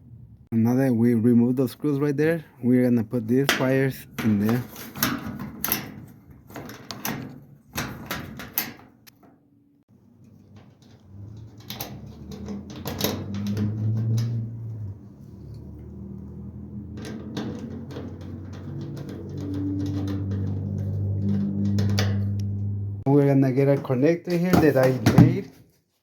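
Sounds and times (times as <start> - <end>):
clicking and rattling of wires: 3.4 - 9.4, 10.1 - 22.7.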